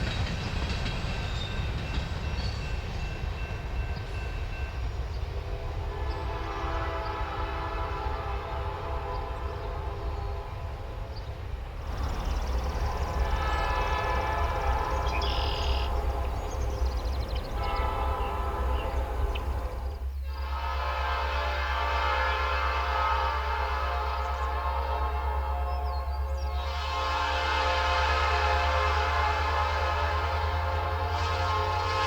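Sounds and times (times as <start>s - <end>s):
locomotive air horn blasts: 5.5s - 32.0s
diesel engine rumble: 11.8s - 20.2s.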